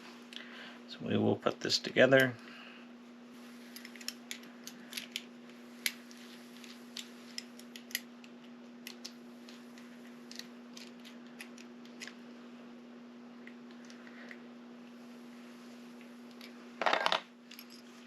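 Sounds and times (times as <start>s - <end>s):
steady low hum: 0.0s - 18.0s
metal lock parts clicking: 3.8s - 6.0s, 7.4s - 8.1s.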